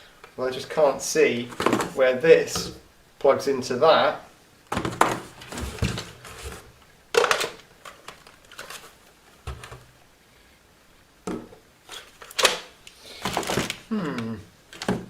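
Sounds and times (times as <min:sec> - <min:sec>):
plastic parts clicking and rattling: 0:04.7 - 0:09.8, 0:11.9 - 0:13.9, 0:14.7 - 0:15.0.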